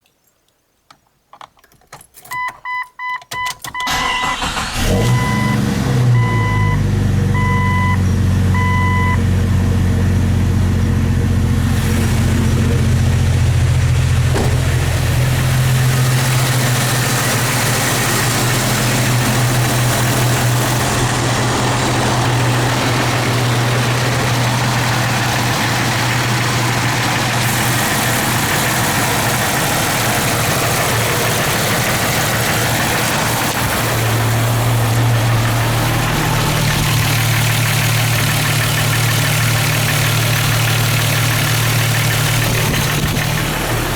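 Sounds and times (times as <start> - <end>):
engine starter cranking: 1.6 - 6.5, 11.6 - 43.9
dashboard warning chime beeping: 2.3 - 5.6, 6.2 - 6.8, 7.4 - 9.2
engine idling with knock: 10.6 - 43.9.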